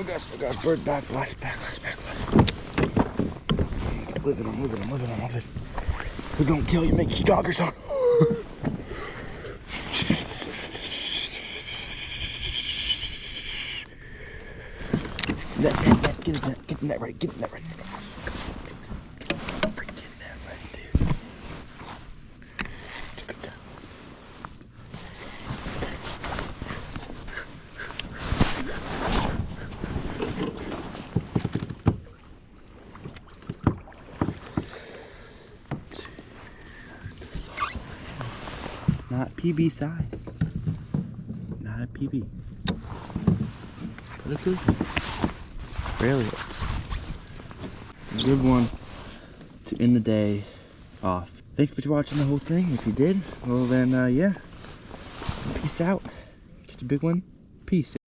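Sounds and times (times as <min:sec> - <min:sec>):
knocks and bumps on a kayak: 0:30.8 - 0:32.2, 0:33.0 - 0:34.8, 0:40.0 - 0:45.4.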